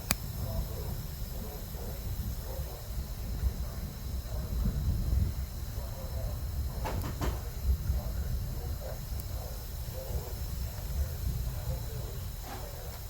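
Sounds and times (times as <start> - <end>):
sharp clicks: 0.0 - 0.3
faint muffled voices: 0.0 - 13.0
steady low rumbling: 0.0 - 13.0.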